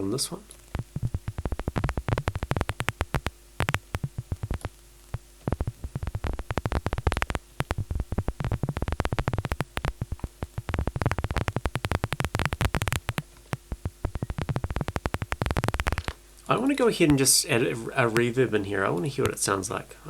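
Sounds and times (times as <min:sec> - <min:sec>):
synthesized paper crumpling clicks: 0:00.5 - 0:16.2.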